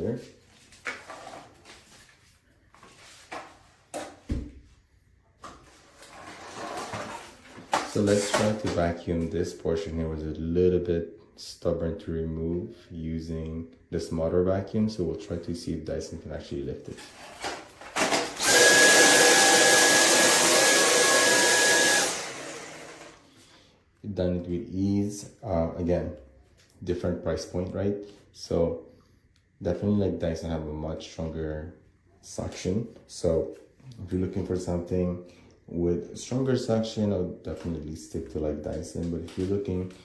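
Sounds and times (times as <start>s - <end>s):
cordless vacuum running: 18.0s - 23.2s.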